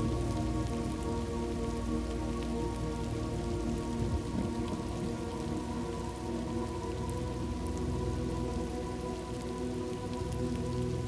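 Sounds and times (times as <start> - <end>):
soft musical drone: 0.0 - 11.0
steady rain falling: 0.0 - 11.0.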